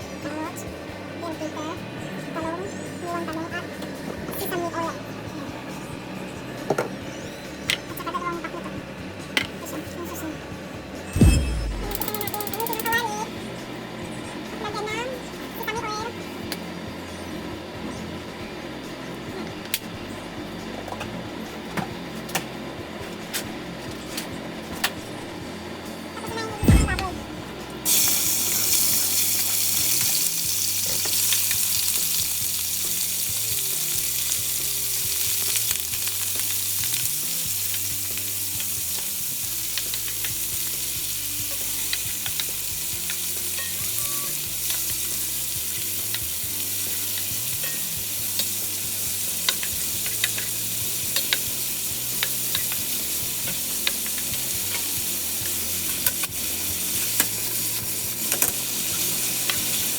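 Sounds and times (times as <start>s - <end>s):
food sizzling in hot oil: 11.2s - 13.2s, 27.8s - 59.9s.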